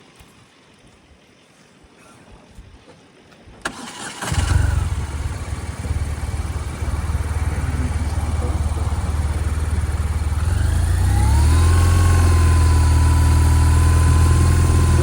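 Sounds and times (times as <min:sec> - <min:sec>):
motorcycle engine starting: 0:03.6 - 0:15.0
motorcycle engine idling: 0:03.9 - 0:15.0.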